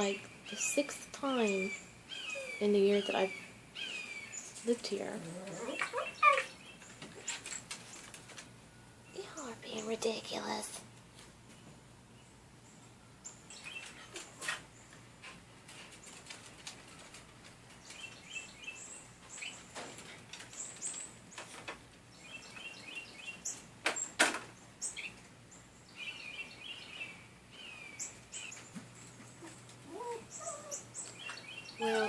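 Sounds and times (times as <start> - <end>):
finch chirping: 26.0 - 28.7.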